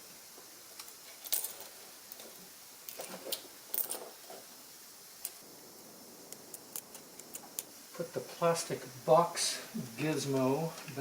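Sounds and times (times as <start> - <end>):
knocks and rustles: 1.2 - 4.5.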